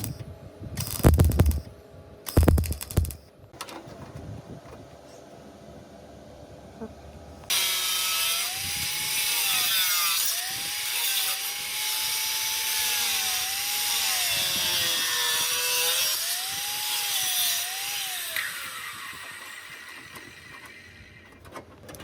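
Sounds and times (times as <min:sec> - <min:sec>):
electric grinder on metal: 0:07.5 - 0:21.2.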